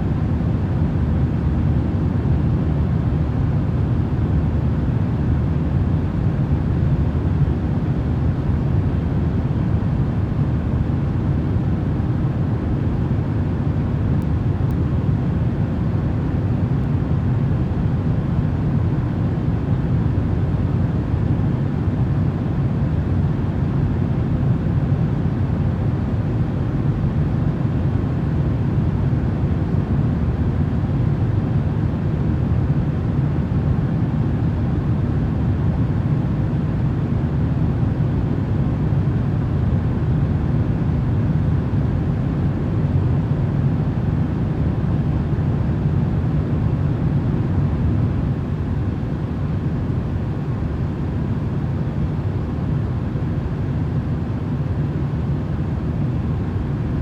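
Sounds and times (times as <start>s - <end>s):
low rumbling white noise: 0.0s - 57.0s.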